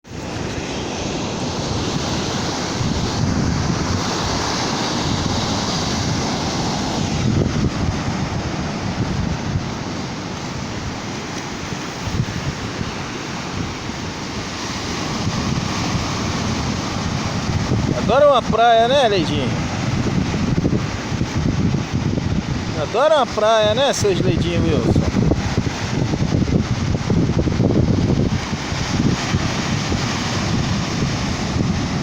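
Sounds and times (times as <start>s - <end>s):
ocean surf breaking: 0.0s - 32.0s
wind buffeting microphone: 0.0s - 32.0s.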